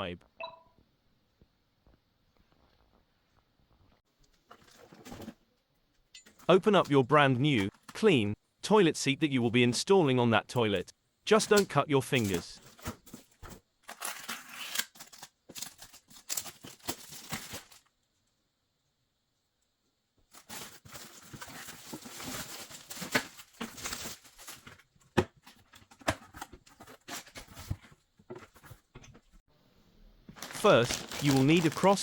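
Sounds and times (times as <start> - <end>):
packaging tearing and crinkling: 13.9 - 17.9, 20.3 - 24.8, 30.4 - 32.0.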